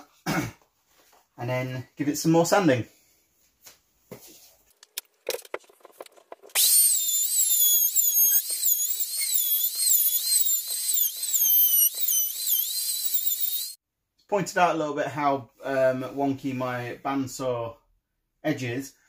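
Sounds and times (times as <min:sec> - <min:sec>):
router whining cutting wood: 0:06.5 - 0:13.8.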